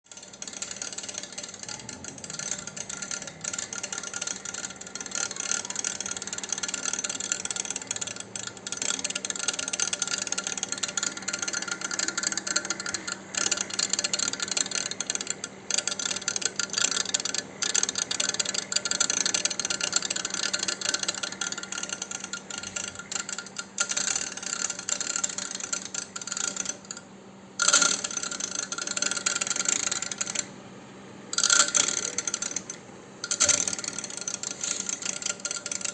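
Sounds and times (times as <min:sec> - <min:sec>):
machine rattling: 0:00.0 - 0:30.5, 0:31.3 - 0:35.9
machine humming: 0:00.0 - 0:35.9.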